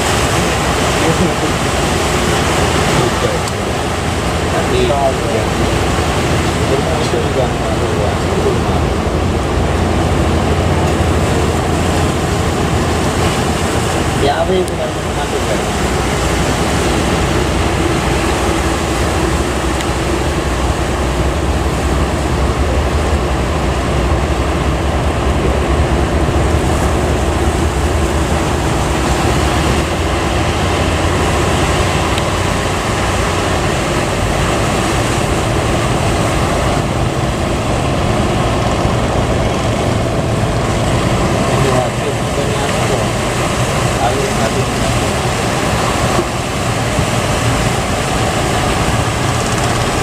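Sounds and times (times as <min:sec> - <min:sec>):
low drone: 0:00.0 - 0:50.0
surf breaking: 0:00.0 - 0:50.0.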